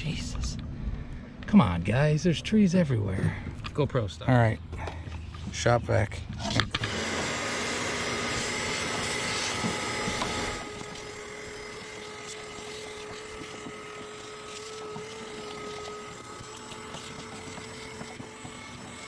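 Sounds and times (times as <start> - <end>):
shop vacuum running: 6.5 - 19.0.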